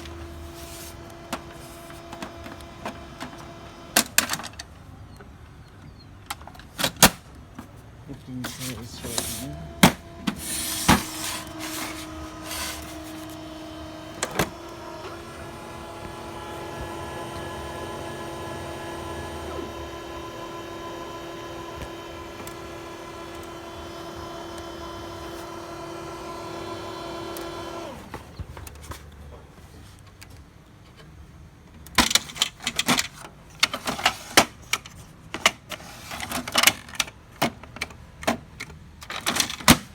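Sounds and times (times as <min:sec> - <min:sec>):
printer motor hum: 0:00.0 - 0:05.9, 0:08.3 - 0:28.6
printer mechanical clicks: 0:08.5 - 0:28.8.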